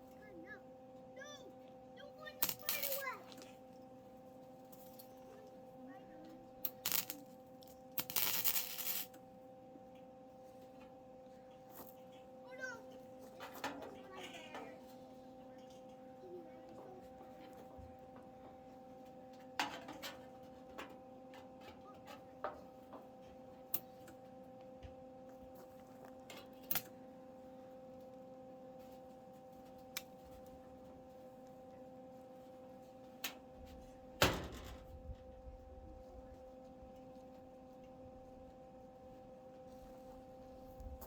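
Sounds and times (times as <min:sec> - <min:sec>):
steady hum: 0:00.0 - 0:19.7.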